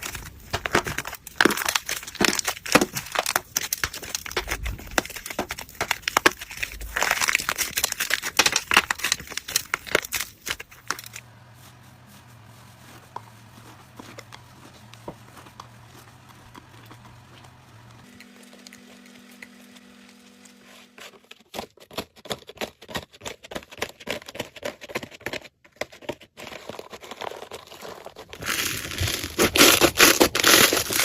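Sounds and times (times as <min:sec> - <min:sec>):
slime crackling and popping: 0:00.0 - 0:11.2, 0:28.4 - 0:31.0.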